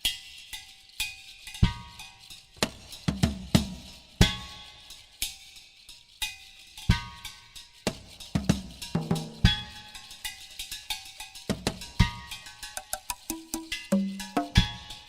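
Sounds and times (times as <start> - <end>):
sharp drum strikes: 12.8 - 14.8.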